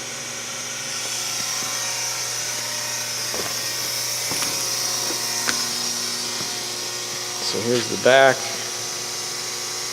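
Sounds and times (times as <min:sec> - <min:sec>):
electric motor whining and humming: 0:00.0 - 0:09.9.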